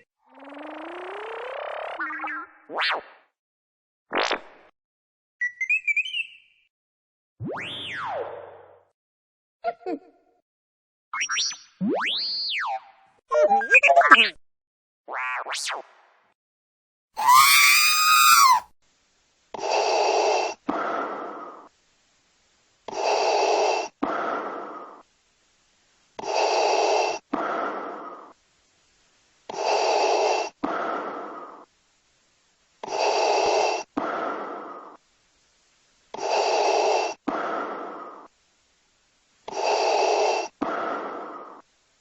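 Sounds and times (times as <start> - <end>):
warbling electronic sound effect: 0.5 - 2.3.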